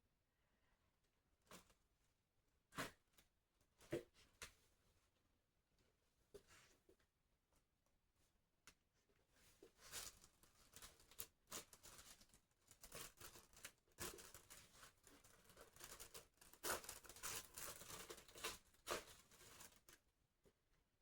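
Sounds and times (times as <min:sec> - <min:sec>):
clothing rustling and crinkling: 0:09.2 - 0:20.0.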